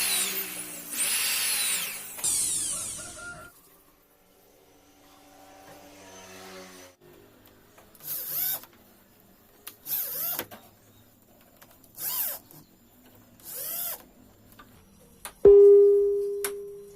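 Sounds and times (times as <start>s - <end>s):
power drill motor whine: 0.0s - 3.5s.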